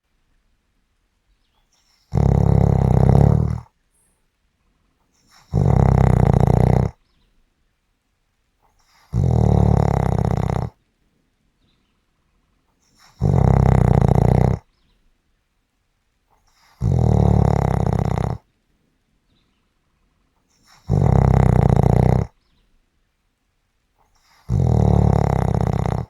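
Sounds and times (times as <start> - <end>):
loud snoring: 2.1 - 3.7, 5.3 - 7.0, 9.0 - 10.8, 13.0 - 14.7, 16.6 - 18.5, 20.6 - 22.4, 24.2 - 26.0.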